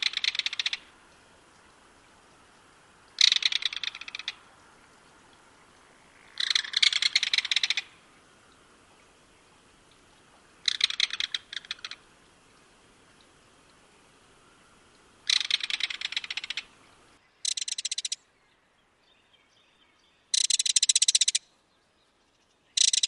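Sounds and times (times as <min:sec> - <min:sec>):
kingfisher rattling call: 0:00.0 - 0:00.8, 0:03.2 - 0:04.4, 0:06.3 - 0:07.9, 0:10.6 - 0:12.0, 0:15.2 - 0:16.7, 0:17.4 - 0:18.2, 0:20.3 - 0:21.4, 0:22.8 - 0:23.0.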